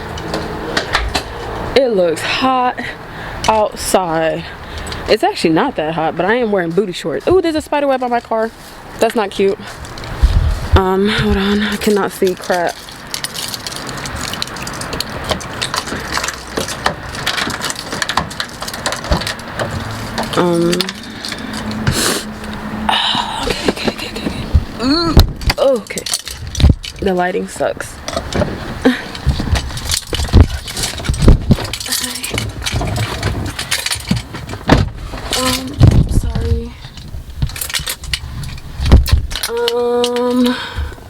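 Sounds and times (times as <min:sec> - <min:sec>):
handling clicks and rustles: 0:00.0 - 0:01.8, 0:03.4 - 0:41.0
keys jangling: 0:11.5 - 0:22.6, 0:25.4 - 0:27.2, 0:29.1 - 0:34.6, 0:35.2 - 0:35.8, 0:37.0 - 0:38.7.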